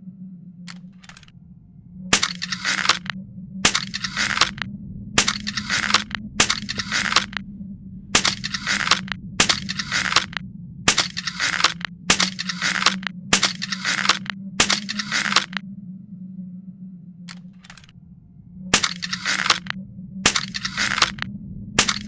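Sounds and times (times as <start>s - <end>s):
low hum: 0.0s - 22.0s
crossbow snap: 20.3s - 22.0s.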